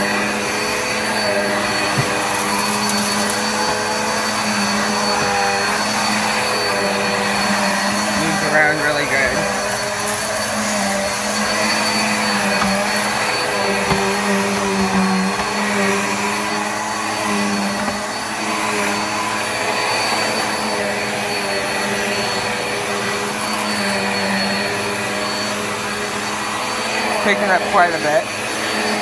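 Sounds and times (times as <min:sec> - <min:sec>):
upright vacuum running: 0:00.0 - 0:29.0.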